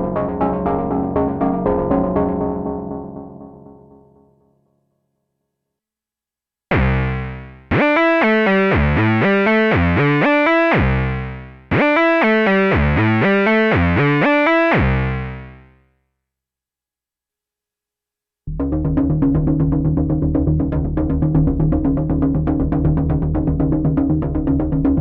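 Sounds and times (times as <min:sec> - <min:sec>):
synthesizer quick stepping notes: 0:06.7 - 0:15.6.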